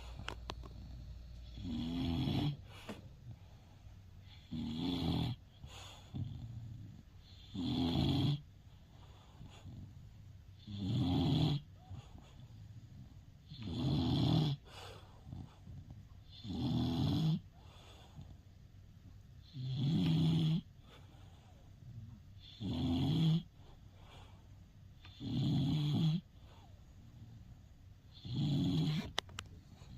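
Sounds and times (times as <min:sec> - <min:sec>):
quiet breathing: 0:00.0 - 0:04.6, 0:05.3 - 0:07.6, 0:08.4 - 0:10.7, 0:11.6 - 0:13.7, 0:14.5 - 0:16.5, 0:17.4 - 0:19.5, 0:20.6 - 0:22.6, 0:23.4 - 0:25.3, 0:26.2 - 0:29.9
dog snoring: 0:00.0 - 0:18.4, 0:19.4 - 0:24.4, 0:25.0 - 0:29.9.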